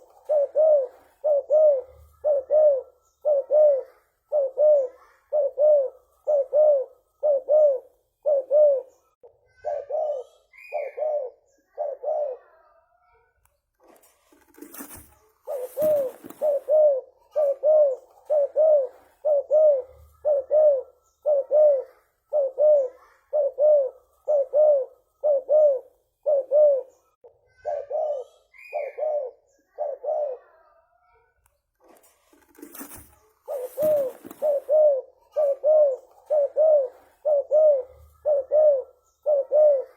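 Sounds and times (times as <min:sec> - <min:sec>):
dove cooing: 0:00.0 - 0:12.6, 0:14.4 - 0:30.8, 0:32.4 - 0:39.9
rustling: 0:13.7 - 0:16.8, 0:31.8 - 0:37.3.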